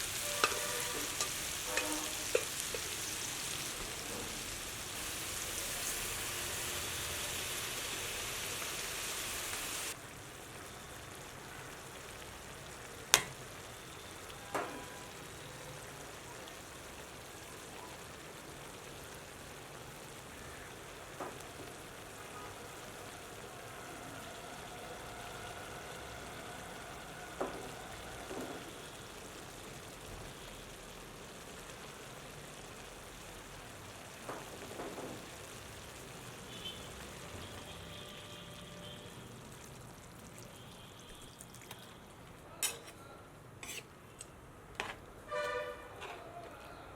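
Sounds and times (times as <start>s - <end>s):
food sizzling in a pan: 0.0s - 46.9s
metal spoon clinking on pan: 0.2s - 3.0s, 13.1s - 13.4s, 42.6s - 43.0s, 43.6s - 43.9s.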